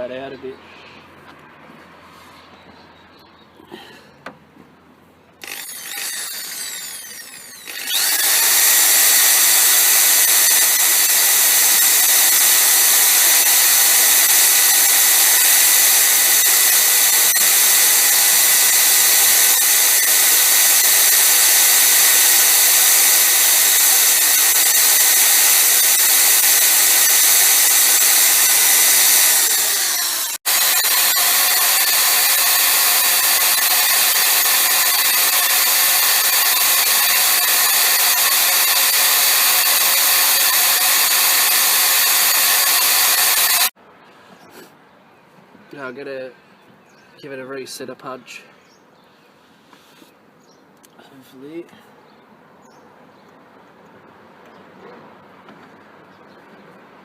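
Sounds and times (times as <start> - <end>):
power grinder whining: 5.4 - 43.8.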